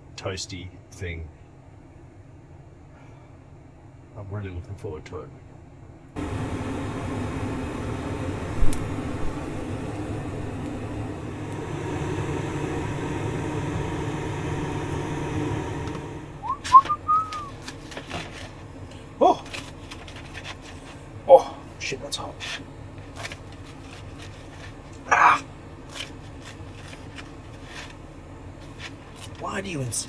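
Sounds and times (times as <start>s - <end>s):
steady whirring hum: 0.0s - 30.0s
short whistled notes: 16.4s - 17.7s.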